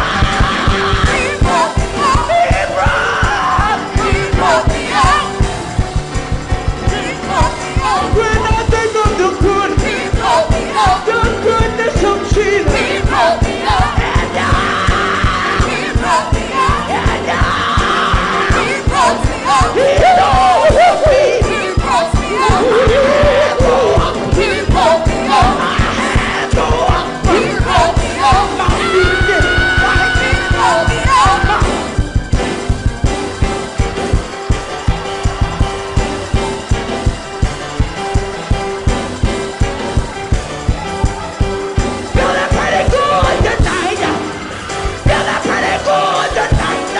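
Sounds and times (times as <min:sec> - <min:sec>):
person singing wordless vocal runs: 0:00.0 - 0:32.8
band with drums and bass: 0:00.0 - 0:46.9.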